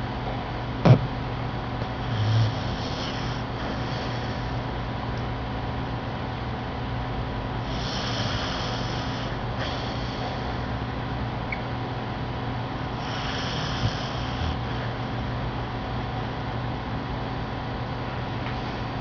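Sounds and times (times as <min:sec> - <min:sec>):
dog snoring: 0:01.8 - 0:04.6, 0:07.6 - 0:10.7, 0:12.9 - 0:15.1.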